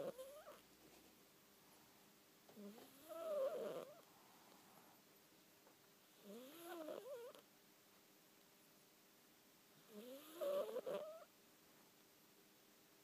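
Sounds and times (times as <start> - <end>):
cat snoring: 0.0 - 0.6, 2.6 - 4.0, 6.1 - 7.4, 9.8 - 11.3.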